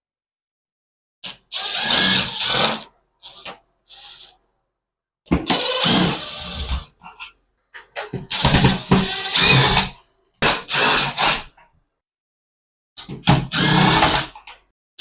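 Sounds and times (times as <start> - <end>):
cordless power drill running: 1.5 - 4.3, 5.5 - 6.6, 13.5 - 14.3.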